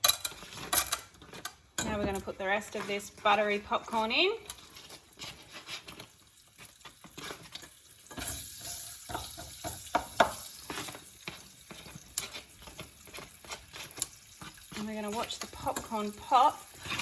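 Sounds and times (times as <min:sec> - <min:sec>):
kernels and utensils clicking on pan: 0:00.0 - 0:17.0
oil sizzling in a pan: 0:00.0 - 0:17.0.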